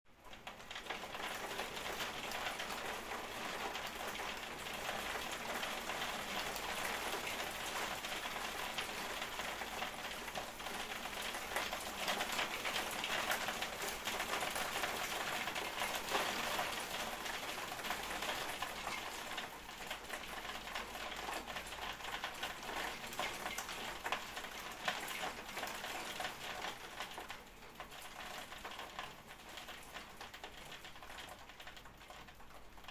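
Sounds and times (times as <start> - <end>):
rain falling steadily: 0.1 - 32.9.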